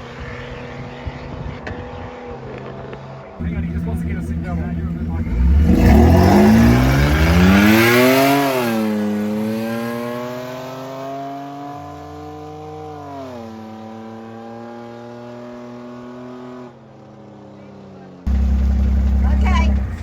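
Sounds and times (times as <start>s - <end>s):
engine revving hard: 3.4s - 10.9s, 18.3s - 20.0s.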